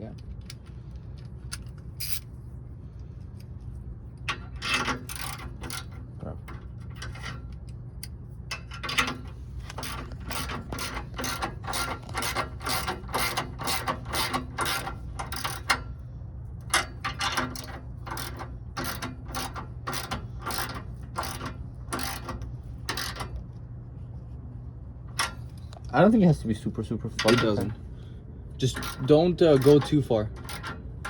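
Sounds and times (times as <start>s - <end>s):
ratchet wrench clicking: 1.5s - 2.3s, 4.3s - 15.9s, 16.6s - 23.4s, 28.6s - 31.0s.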